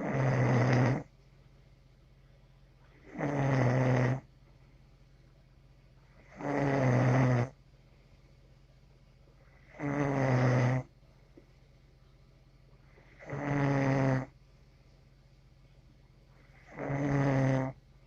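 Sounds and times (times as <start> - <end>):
person snoring: 0.0 - 1.1, 3.0 - 4.3, 6.2 - 7.5, 9.6 - 10.9, 13.1 - 14.3, 16.5 - 17.8.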